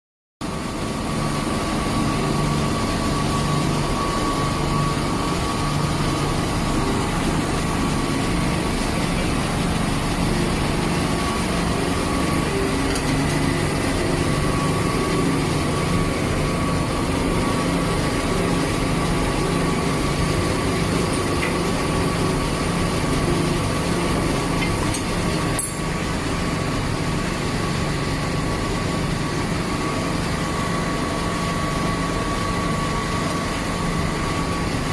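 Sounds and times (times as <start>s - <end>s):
electric pump motor humming: 0.4s - 34.9s.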